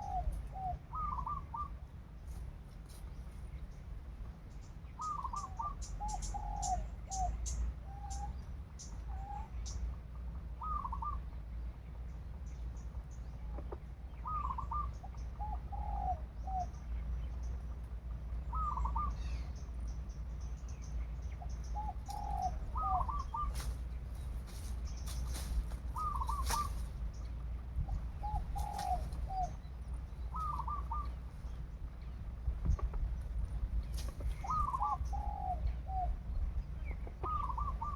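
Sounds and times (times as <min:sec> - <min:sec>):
doves cooing: 0:00.0 - 0:01.8, 0:05.0 - 0:09.7, 0:10.5 - 0:11.3, 0:13.5 - 0:16.9, 0:18.4 - 0:19.6, 0:21.4 - 0:27.1, 0:27.8 - 0:31.7, 0:32.6 - 0:37.9
low rumble: 0:00.0 - 0:37.9
wing-flaps: 0:23.4 - 0:27.0.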